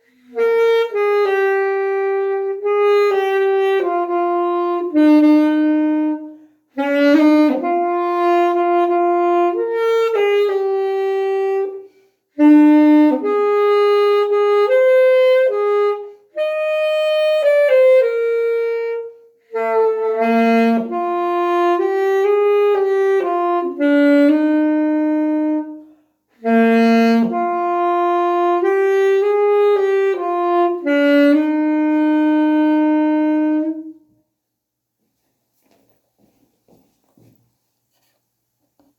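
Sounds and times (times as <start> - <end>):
solo saxophone melody: 0.0 - 34.3.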